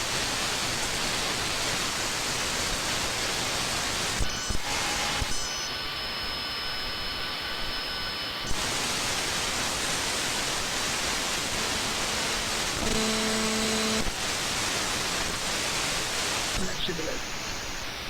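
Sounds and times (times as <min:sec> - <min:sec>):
radio static hiss: 0:07.0 - 0:18.0
low buzzing tone: 0:11.6 - 0:14.0.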